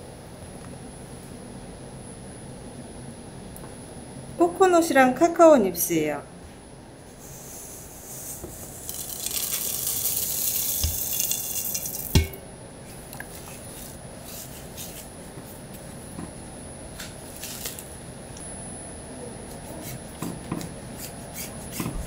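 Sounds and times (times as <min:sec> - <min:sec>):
flakes pouring with hissing rush: 0:07.2 - 0:12.2.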